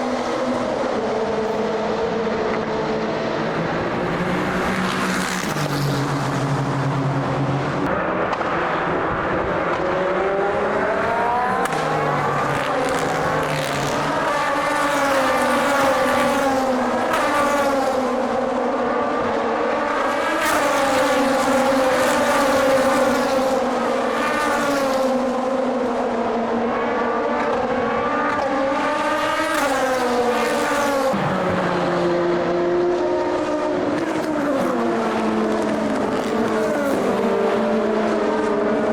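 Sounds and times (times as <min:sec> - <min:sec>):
race car engines at full throttle: 0:00.0 - 0:38.9.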